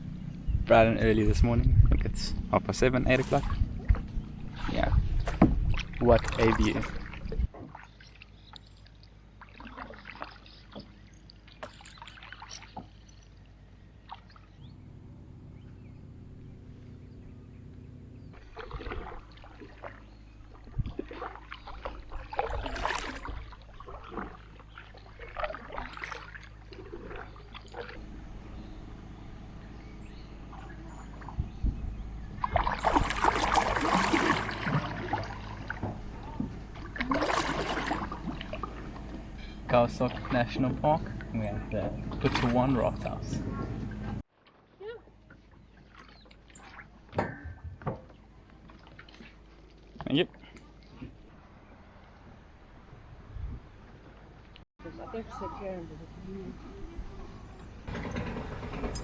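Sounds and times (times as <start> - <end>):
steady low hum: 0.0 - 7.5, 12.9 - 44.2
paddle sloshing in water: 3.1 - 14.6, 16.7 - 53.1
rush of splashing: 18.3 - 28.5, 32.3 - 40.7.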